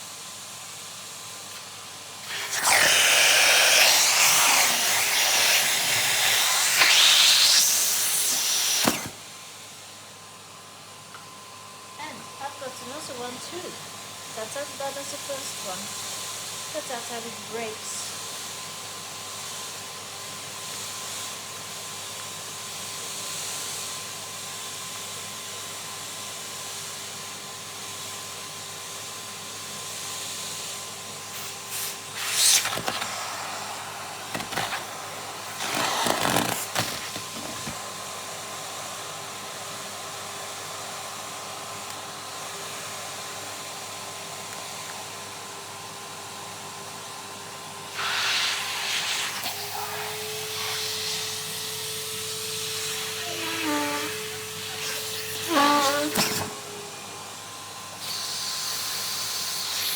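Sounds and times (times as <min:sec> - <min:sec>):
vacuum cleaner running: 0:00.0 - 0:59.9
bursts of debris sucked into hose: 0:02.2 - 0:09.2.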